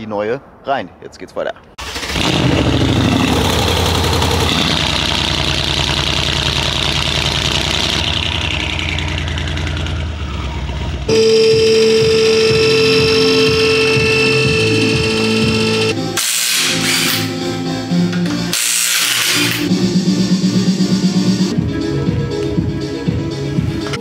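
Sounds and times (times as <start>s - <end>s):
car engine running: 1.9s - 15.9s
high steady whirring: 11.1s - 16.0s.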